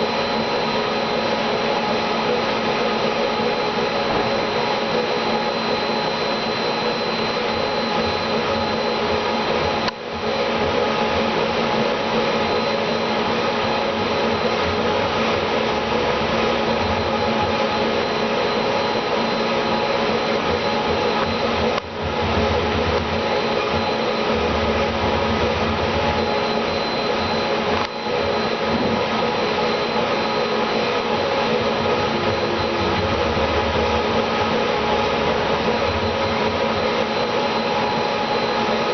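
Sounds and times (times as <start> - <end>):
whirring machine: 0.0 - 38.9.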